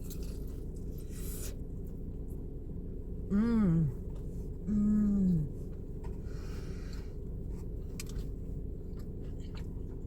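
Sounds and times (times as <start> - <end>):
soft chewing: 0.0 - 2.0, 4.0 - 10.0
low background hum: 0.0 - 10.0
woman humming mmm: 3.3 - 4.0, 4.6 - 5.6.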